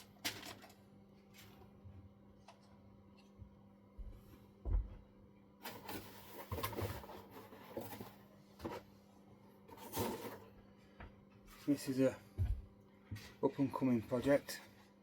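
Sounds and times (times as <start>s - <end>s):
faint steady hum: 0.0s - 15.0s
rustling and clattering: 5.6s - 9.0s, 9.6s - 10.6s.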